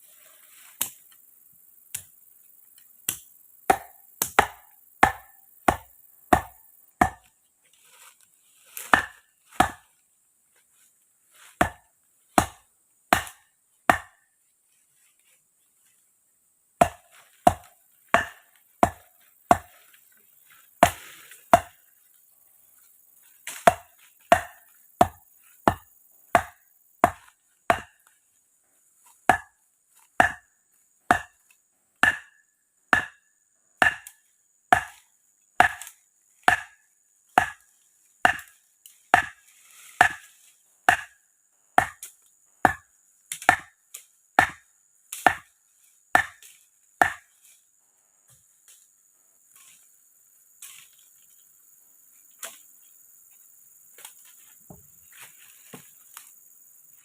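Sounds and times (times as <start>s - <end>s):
wood being chopped: 3.1s - 7.3s, 8.7s - 9.9s, 11.5s - 14.2s, 16.8s - 19.8s, 20.8s - 21.8s, 23.5s - 28.1s, 29.2s - 29.6s, 30.2s - 30.5s, 31.1s - 35.0s, 35.6s - 36.8s, 37.4s - 39.4s, 40.0s - 40.3s, 40.9s - 41.2s, 41.8s - 43.8s, 44.4s - 45.5s, 46.2s - 47.3s.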